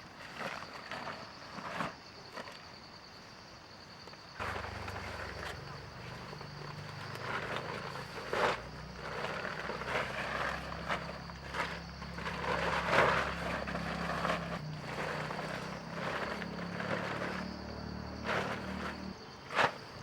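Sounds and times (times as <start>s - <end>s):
irregular rustling: 4.4s - 20.0s.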